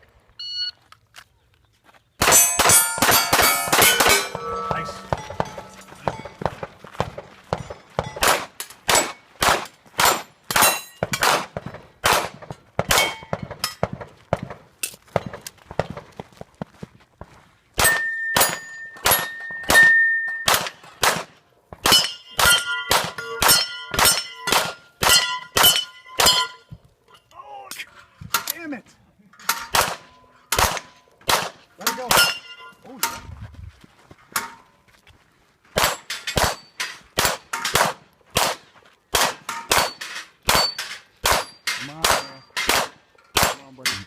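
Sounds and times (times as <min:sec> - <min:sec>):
steel plates clanging and ringing: 0:02.2 - 0:06.6, 0:10.0 - 0:11.2, 0:17.8 - 0:20.5, 0:21.9 - 0:27.3, 0:31.8 - 0:33.3, 0:39.5 - 0:44.0
pistol shots: 0:02.2 - 0:14.6, 0:17.8 - 0:26.5, 0:29.7 - 0:32.4, 0:35.8 - 0:36.6, 0:37.2 - 0:43.7.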